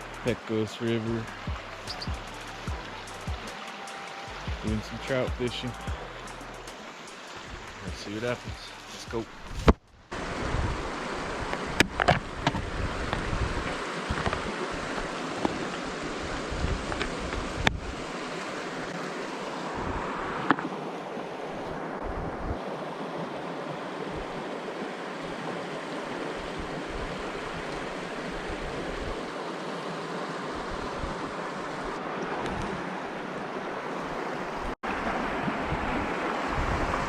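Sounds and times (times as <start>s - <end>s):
river water rushing: 0.0s - 37.0s
wind buffeting microphone: 7.4s - 18.2s, 19.7s - 20.5s, 21.6s - 22.6s, 34.5s - 37.0s.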